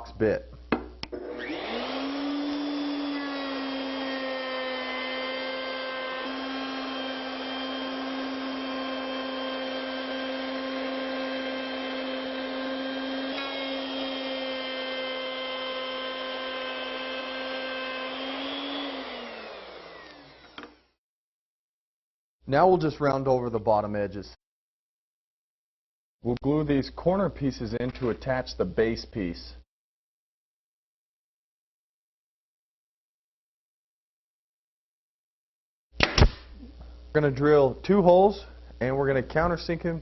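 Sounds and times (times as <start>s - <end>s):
router cutting wood: 1.1s - 20.8s.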